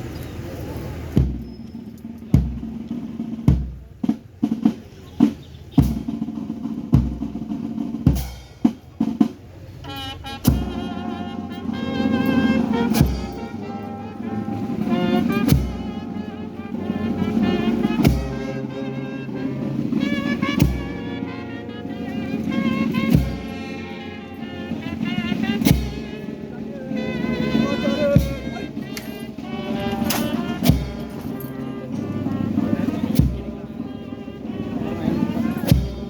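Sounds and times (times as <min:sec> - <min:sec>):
snare drum rolls: 0:01.2 - 0:26.4, 0:27.0 - 0:33.7
wavering brass tones: 0:09.8 - 0:36.0.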